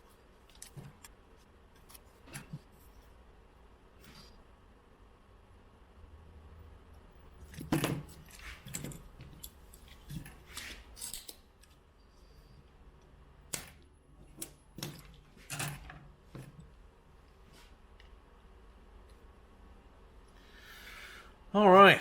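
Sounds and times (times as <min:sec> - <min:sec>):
metal tools clinking: 0:07.5 - 0:11.4.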